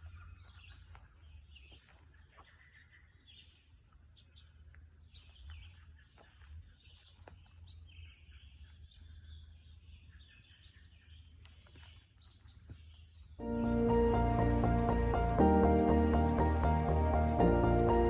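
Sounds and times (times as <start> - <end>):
birds chirping and trilling: 0.0 - 14.6
music: 13.4 - 18.0.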